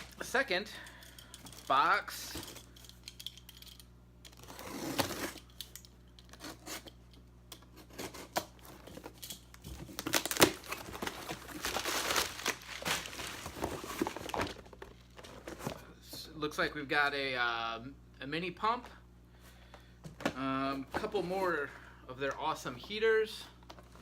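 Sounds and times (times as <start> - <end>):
tape tearing: 4.3 - 7.0, 7.7 - 14.6
packing material crinkling: 9.0 - 15.6.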